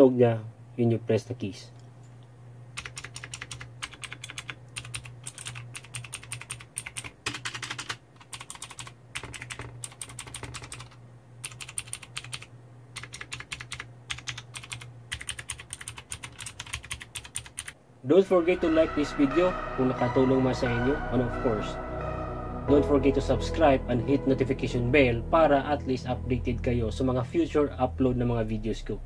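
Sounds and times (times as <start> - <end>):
mechanical keyboard keys clicking: 2.8 - 17.8.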